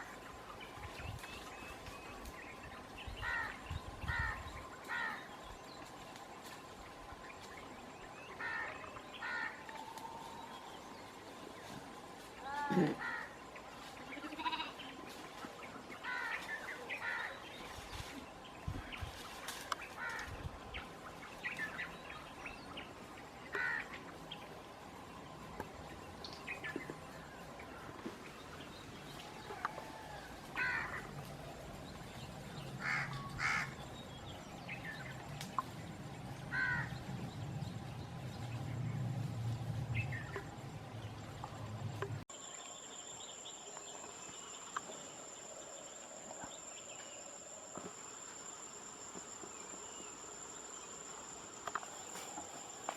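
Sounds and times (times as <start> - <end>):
faint insect drone: 0.0 - 52.9
crows cawing: 3.2 - 5.2, 8.4 - 9.6, 13.0 - 13.4, 16.1 - 16.4, 23.6 - 23.9, 30.6 - 31.1, 32.8 - 33.8, 36.5 - 36.9
low rumble: 35.6 - 42.2.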